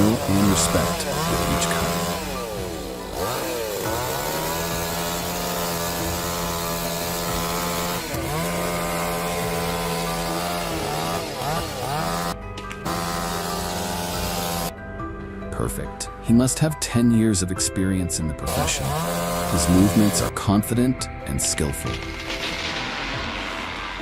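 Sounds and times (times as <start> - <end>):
chainsaw revving: 0.0 - 14.7, 18.5 - 20.4.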